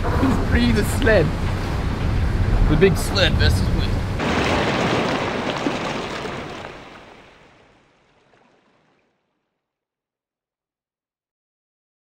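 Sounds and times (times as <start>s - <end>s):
wind noise: 0.0s - 7.3s
rushing water: 0.0s - 9.5s.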